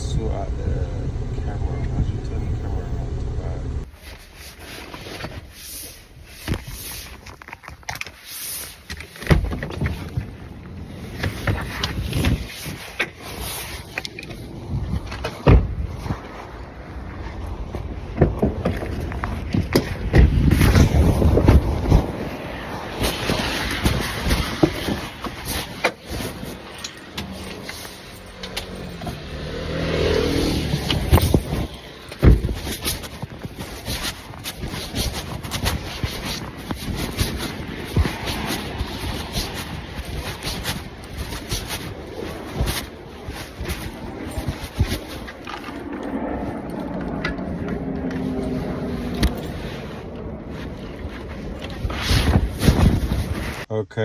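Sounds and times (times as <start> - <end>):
motor-like hum: 0.0 - 3.9.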